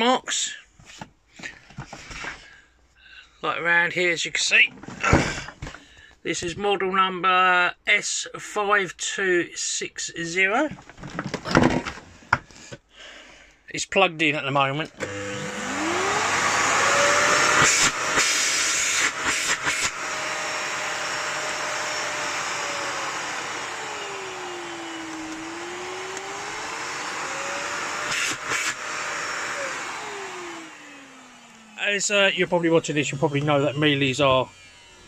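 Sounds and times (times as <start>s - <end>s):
vacuum cleaner motor whining: 14.9s - 35.0s.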